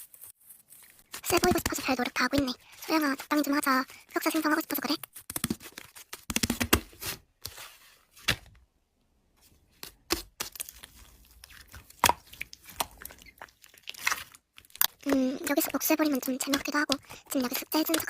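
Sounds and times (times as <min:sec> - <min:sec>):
slime squished by hand: 0:09.8 - 0:15.2.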